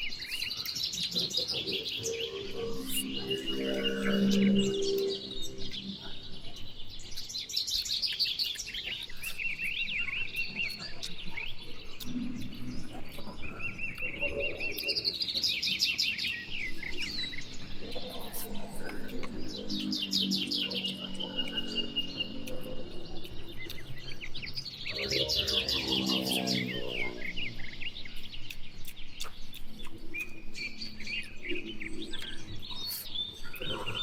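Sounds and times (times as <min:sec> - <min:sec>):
small birds chirping and trilling: 0:00.0 - 0:34.0
lower steady pitched sound: 0:02.0 - 0:07.4.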